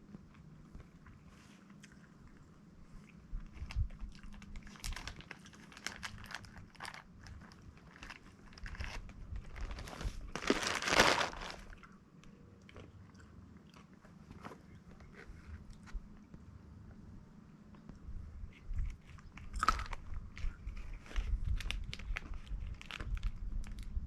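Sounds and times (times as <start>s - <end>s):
chewing and crunching snack: 0.0s - 16.3s, 17.7s - 24.0s
packet rustling: 3.7s - 11.8s, 18.9s - 23.8s.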